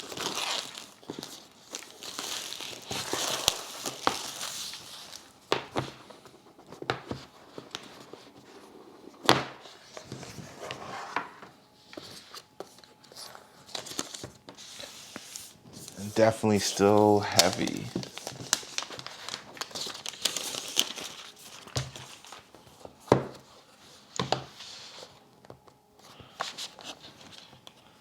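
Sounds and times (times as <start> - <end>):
packaging rustling: 0.0 - 8.3, 12.0 - 23.0.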